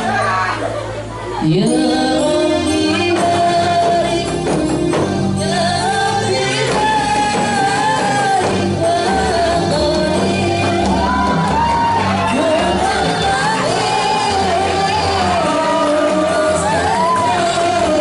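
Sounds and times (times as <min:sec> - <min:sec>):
high singing voice: 0:01.3 - 0:18.0
frame drums beating: 0:02.7 - 0:18.0.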